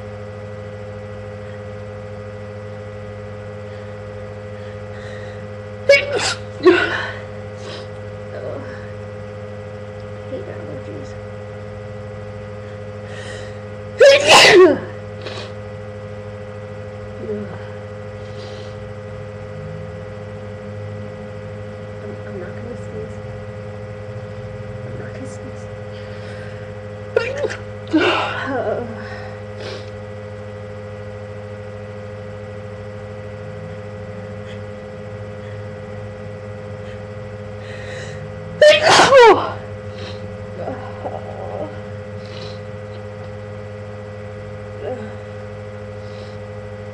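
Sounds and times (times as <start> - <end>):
woman sneezing: 5.9 - 7.9, 14.0 - 15.6, 27.2 - 28.6, 38.6 - 41.1.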